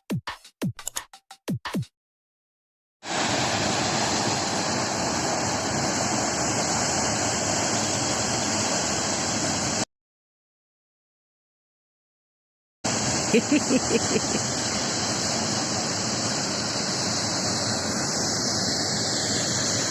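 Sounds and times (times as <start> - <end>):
waterfall roaring: 3.1 - 9.3, 12.9 - 18.0.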